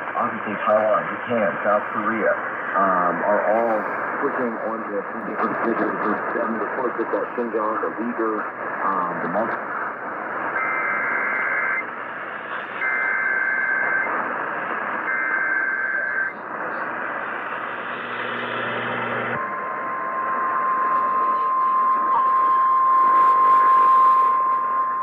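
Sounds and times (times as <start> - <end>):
radio hiss: 0.0 - 24.9
steady single-pitch alarm tone: 10.6 - 11.9, 12.8 - 14.1, 18.1 - 25.0.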